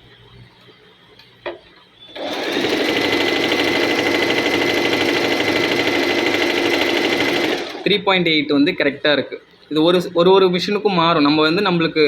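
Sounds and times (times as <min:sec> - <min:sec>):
sewing machine running: 0:02.1 - 0:08.1.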